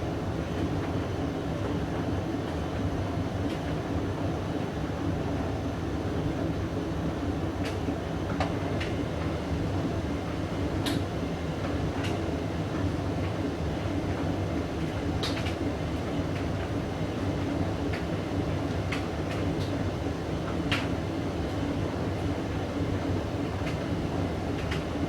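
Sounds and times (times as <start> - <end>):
washing machine rumbling: 11.5 - 25.0.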